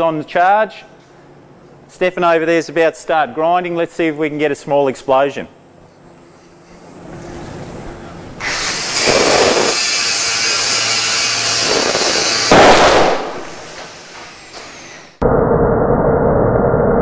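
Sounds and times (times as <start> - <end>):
grinder grinding: 8.4 - 12.6
battery exploding bang: 11.7 - 13.7.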